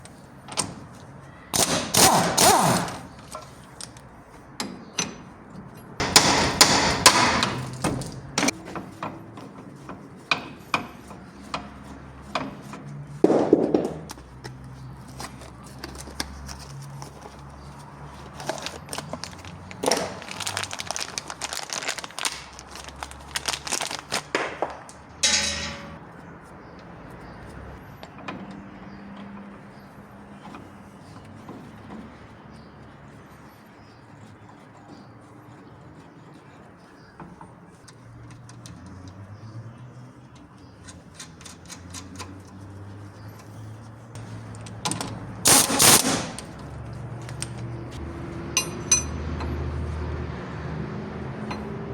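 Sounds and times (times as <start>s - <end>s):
metal clattering bursts: 1.5s - 3.1s, 6.0s - 8.3s, 24.8s - 26.0s, 44.2s - 46.7s
metal clanks and knocks: 4.6s - 14.1s, 24.6s - 26.0s, 48.5s - 49.6s.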